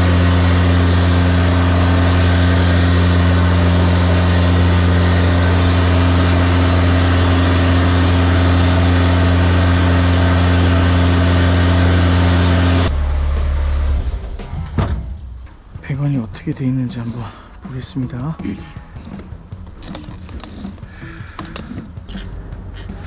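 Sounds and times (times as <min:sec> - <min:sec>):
drain jetting machine humming: 0:00.0 - 0:14.2.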